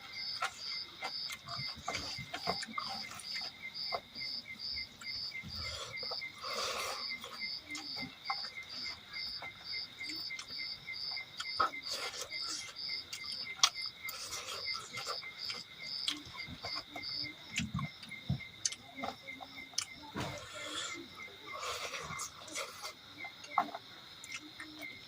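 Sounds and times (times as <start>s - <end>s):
insect chirping: 0.0s - 25.0s
soft eating clicks and smacks: 6.0s - 25.0s.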